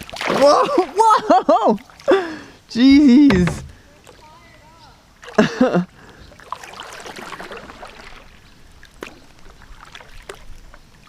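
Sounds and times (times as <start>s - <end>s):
water splashing and trickling: 0.0s - 11.0s
sharp knocks: 2.8s - 3.8s.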